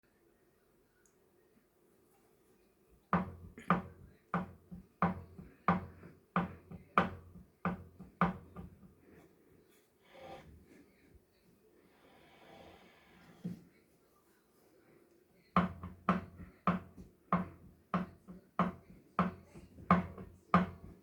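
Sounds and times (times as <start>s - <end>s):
exercise bike knocking: 3.2s - 8.9s, 15.6s - 21.0s.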